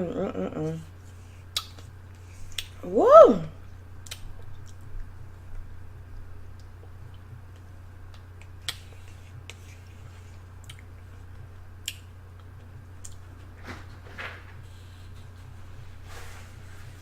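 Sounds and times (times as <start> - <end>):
steady low hum: 0.0 - 17.0
wet mouth smacks: 1.5 - 1.9, 4.0 - 4.8, 8.1 - 9.6.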